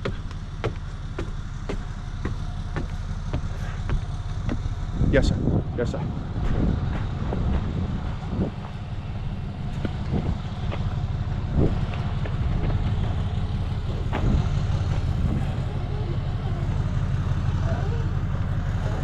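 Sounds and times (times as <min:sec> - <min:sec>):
knocks and clunks: 0:00.0 - 0:04.8, 0:09.7 - 0:15.6
truck engine low rumble: 0:00.0 - 0:19.0.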